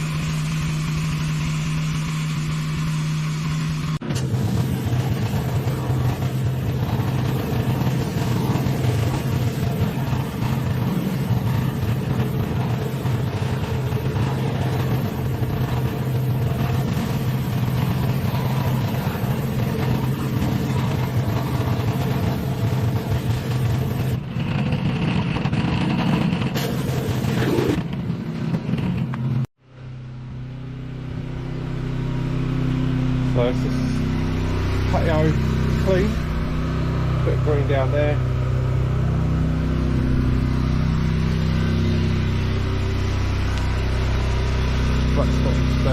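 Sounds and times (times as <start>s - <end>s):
water jet hissing: 0.0s - 24.2s
pressure washer engine hum: 0.0s - 45.9s.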